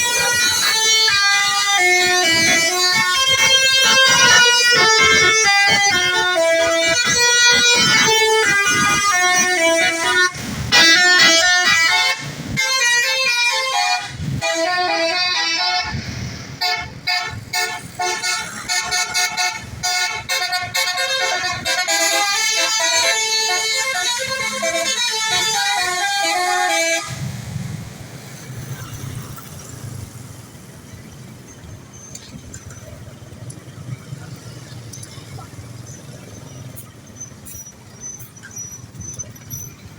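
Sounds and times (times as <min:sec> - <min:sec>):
multi-tone bus horn melody: 0:00.0 - 0:27.3
passing vehicle engine rumble: 0:14.0 - 0:39.9.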